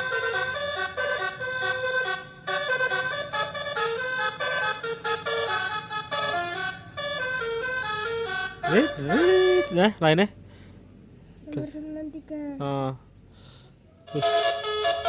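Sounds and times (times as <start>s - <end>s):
multi-tone horn playing a tune: 0.0s - 9.9s, 14.1s - 15.0s.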